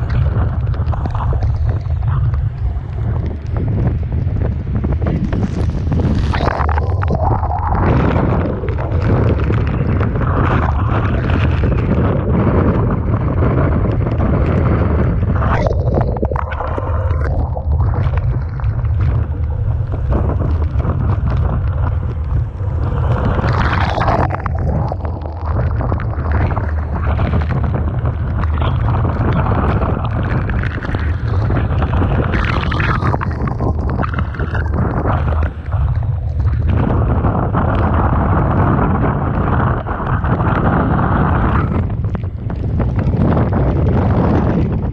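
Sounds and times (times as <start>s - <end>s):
rough sea rushing: 0.0s - 44.9s
strong wind buffeting microphone: 0.0s - 44.9s
waves and spray surging: 13.0s - 42.3s.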